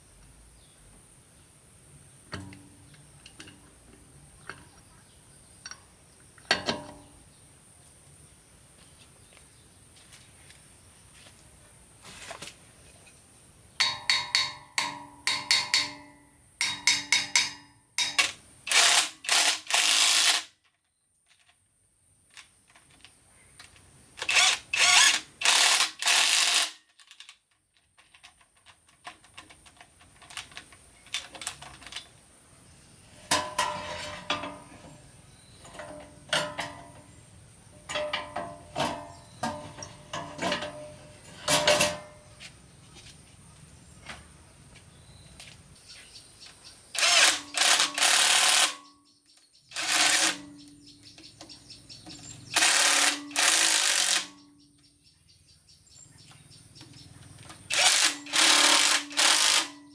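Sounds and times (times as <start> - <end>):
hand tools clicking on metal: 13.8 - 20.4, 23.6 - 27.4, 35.6 - 37.1, 37.8 - 42.2, 47.0 - 48.8, 49.7 - 54.4, 56.9 - 59.9.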